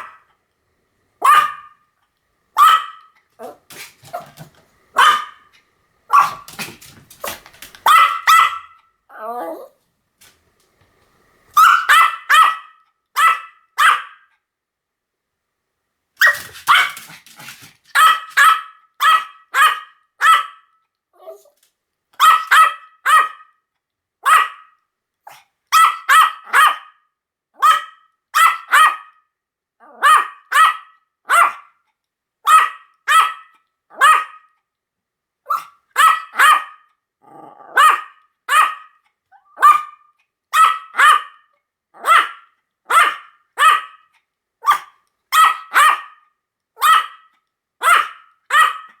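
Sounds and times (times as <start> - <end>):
small dog yapping: 1.2 - 1.8, 2.6 - 5.5, 6.1 - 9.7, 11.6 - 14.2, 16.2 - 20.6, 22.2 - 23.5, 24.2 - 24.7, 25.3 - 26.9, 27.6 - 29.1, 29.8 - 31.7, 32.5 - 34.5, 35.5 - 36.8, 37.6 - 41.4, 42.0 - 46.2, 46.8 - 49.0.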